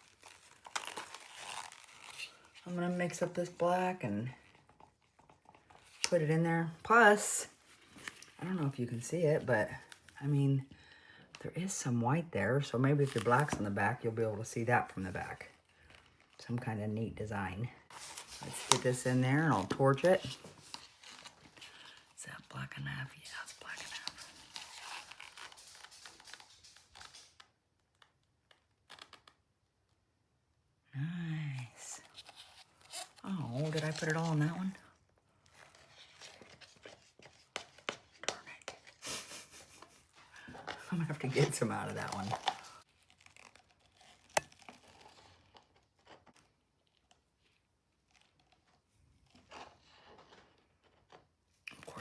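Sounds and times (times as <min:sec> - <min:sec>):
stir stick scraping plastic cup: 0:36.1 - 0:45.5.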